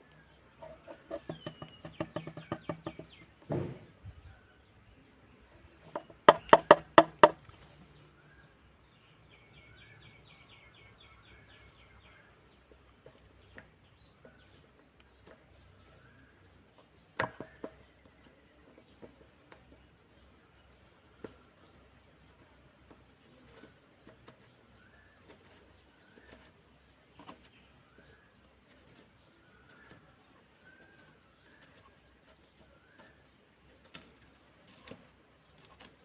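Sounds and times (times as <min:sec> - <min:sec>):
birds chirping faintly: 0:00.0 - 0:36.0
sharp knocks: 0:01.1 - 0:04.0, 0:05.9 - 0:07.4.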